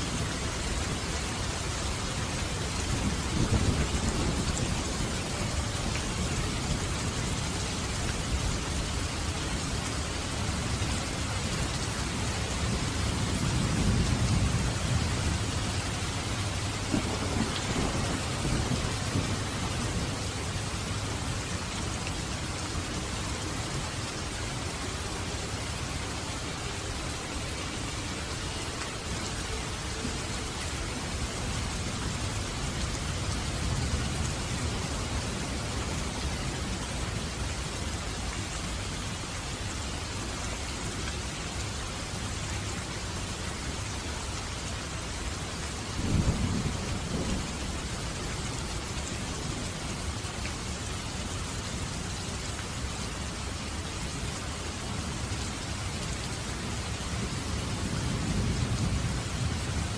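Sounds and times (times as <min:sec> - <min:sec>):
steady rain: 0:00.0 - 0:59.9
low thunder rumble: 0:02.5 - 0:08.9, 0:12.6 - 0:21.3, 0:46.0 - 0:48.0
thunderclap: 0:16.8 - 0:19.7.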